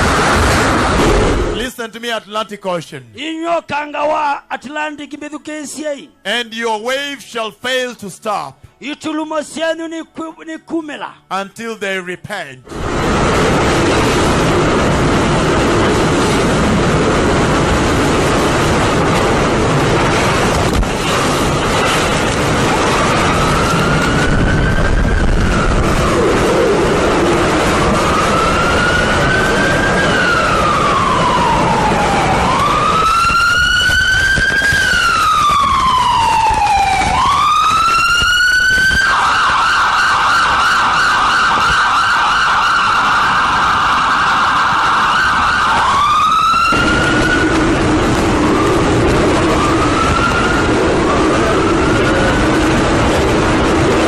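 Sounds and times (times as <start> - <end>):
siren wailing and yelping: 22.2 - 54.0.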